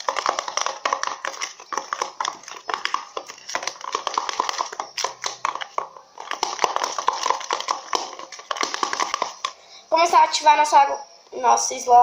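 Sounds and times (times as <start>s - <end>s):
sticky slime stirring clicks: 0.0s - 9.6s.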